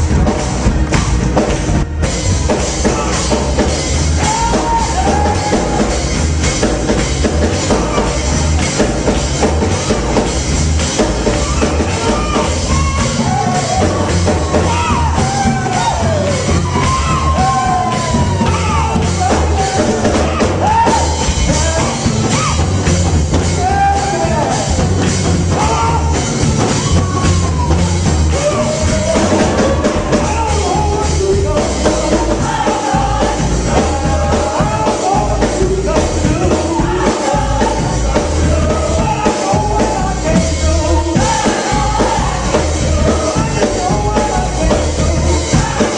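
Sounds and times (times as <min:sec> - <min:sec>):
band with drums and bass: 0:00.0 - 0:45.9
person singing: 0:25.5 - 0:45.9.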